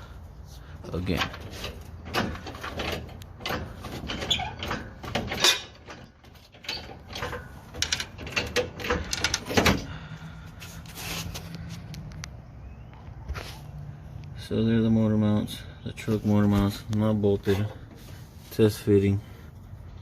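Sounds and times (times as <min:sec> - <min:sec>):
lifting gear squeaks and creaks: 0:00.9 - 0:09.9.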